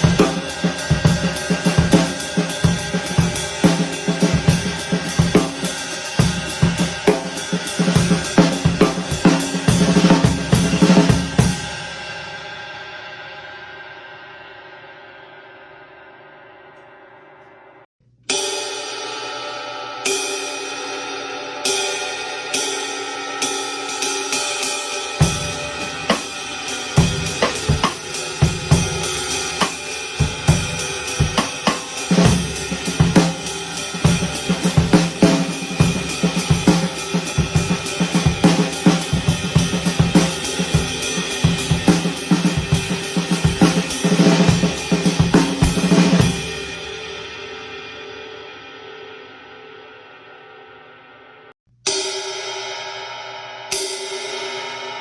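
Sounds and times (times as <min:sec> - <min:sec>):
drum kit groove: 0:00.0 - 0:12.6, 0:22.6 - 0:47.7
ride cymbal strokes: 0:00.0 - 0:13.1, 0:23.4 - 0:47.1.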